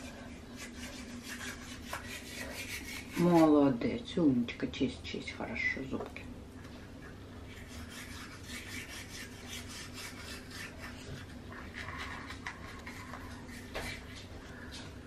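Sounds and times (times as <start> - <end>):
toothbrush scrubbing teeth: 0.0 - 3.6, 7.4 - 14.9.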